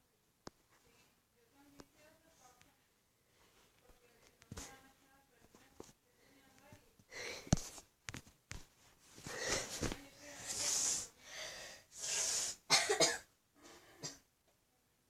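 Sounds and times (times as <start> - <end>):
person exhaling breathily: 10.4 - 12.6.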